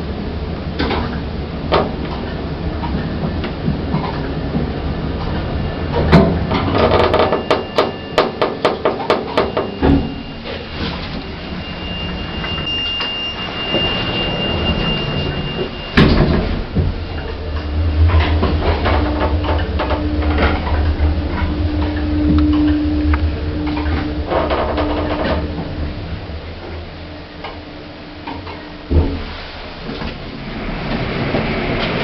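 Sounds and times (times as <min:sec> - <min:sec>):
lift machinery humming and whining: 0:00.0 - 0:32.0
steady high tone: 0:09.3 - 0:24.3.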